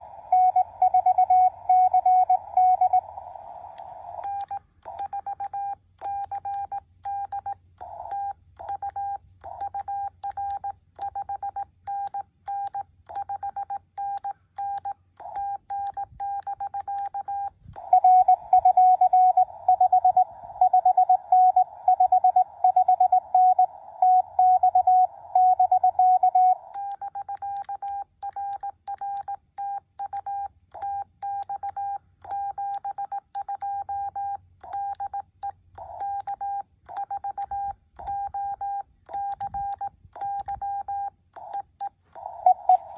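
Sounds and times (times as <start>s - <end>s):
receiver hiss: 0.0s - 4.5s, 17.5s - 26.7s, 42.0s - 42.9s
morse code tone: 0.2s - 3.3s, 13.4s - 28.1s, 42.2s - 42.9s.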